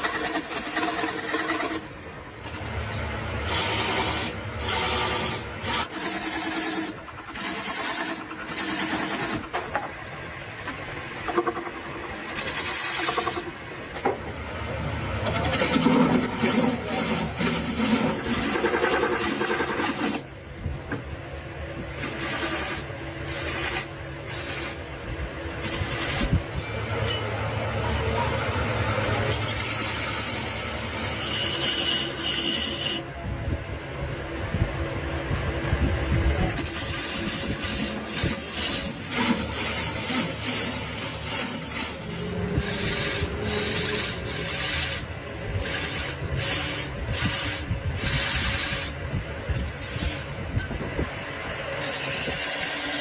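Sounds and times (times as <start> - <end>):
wood rasped with hand tools: 0.0 - 2.8, 3.4 - 9.8, 11.3 - 13.5, 15.2 - 20.3, 22.0 - 24.8, 25.6 - 26.8, 29.0 - 33.1, 36.4 - 49.0, 49.6 - 50.3, 51.8 - 53.0.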